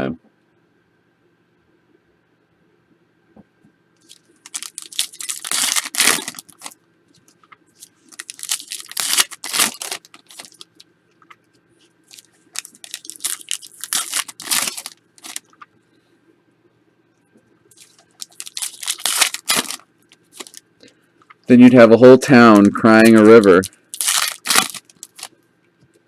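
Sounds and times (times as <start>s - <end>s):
card pack wrappers tearing: 4.0s - 6.8s, 7.8s - 10.8s, 12.1s - 15.6s, 17.7s - 20.6s, 22.3s - 25.3s.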